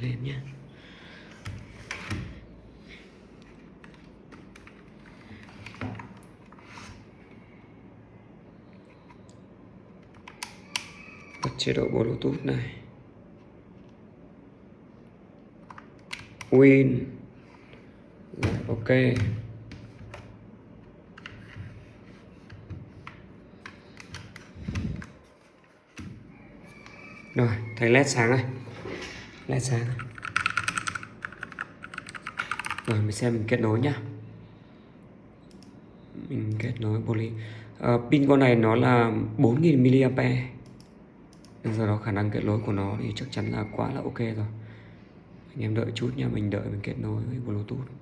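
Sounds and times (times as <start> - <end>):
keyboard clicks and taps: 30.0 - 32.9.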